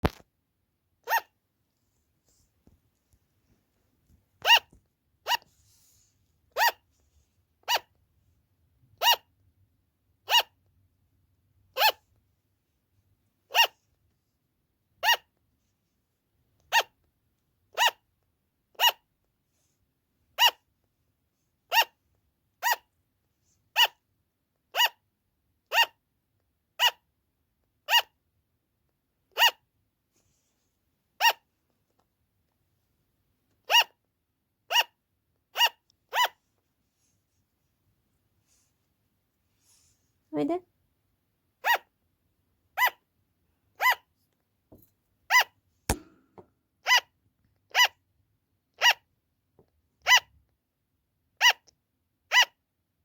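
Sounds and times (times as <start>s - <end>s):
sugar glider barking: 1.0s - 1.4s, 4.4s - 5.4s, 6.6s - 6.8s, 7.6s - 7.9s, 9.0s - 9.3s, 10.2s - 10.6s, 11.8s - 12.0s, 13.5s - 13.8s, 15.0s - 15.3s, 16.7s - 17.0s, 17.7s - 18.0s, 18.8s - 19.0s, 20.4s - 20.6s, 21.7s - 22.0s, 22.6s - 22.9s, 23.7s - 24.0s, 24.7s - 25.0s, 25.7s - 26.0s, 26.8s - 27.0s, 27.9s - 28.2s, 29.3s - 29.6s, 31.2s - 31.5s, 33.6s - 34.0s, 34.7s - 36.4s, 41.6s - 41.9s, 42.8s - 43.0s, 43.8s - 44.1s, 47.7s - 48.0s, 48.8s - 49.1s, 50.0s - 50.3s, 51.4s - 51.7s, 52.3s - 52.6s.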